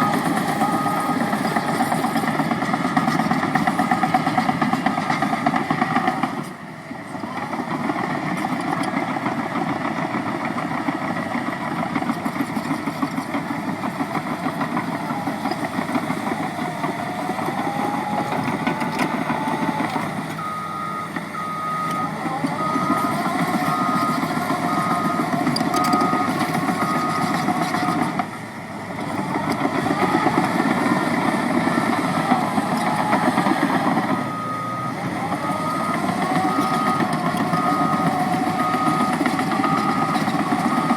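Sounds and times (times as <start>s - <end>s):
reversing alarm beeps: 0.0s - 6.3s, 15.3s - 28.1s, 30.0s - 40.9s
diesel engine revving: 0.0s - 6.4s, 13.6s - 40.9s.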